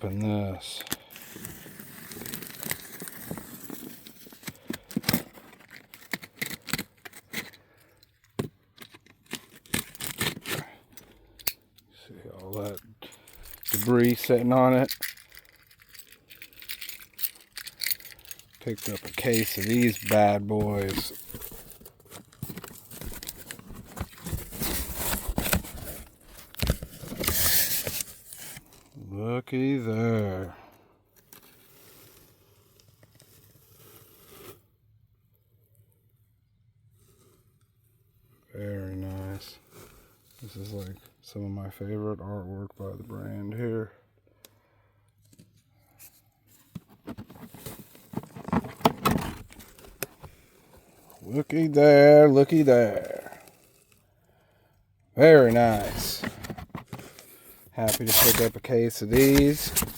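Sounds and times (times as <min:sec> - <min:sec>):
packaging crinkling and clicking: 0:00.8 - 0:11.6, 0:13.4 - 0:28.8, 0:55.5 - 0:59.9
cardboard box ripping: 0:20.7 - 0:28.6, 0:57.9 - 0:59.9.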